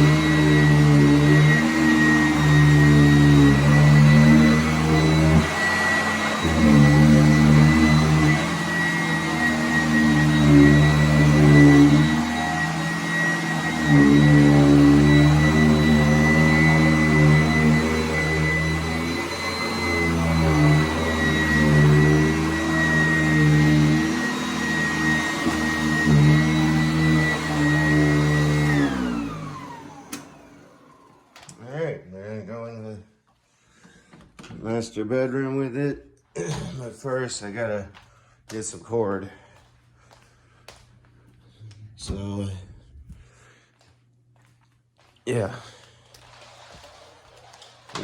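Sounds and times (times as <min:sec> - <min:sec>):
vacuum cleaner motor whine: 0:00.0 - 0:31.8, 0:45.8 - 0:48.0.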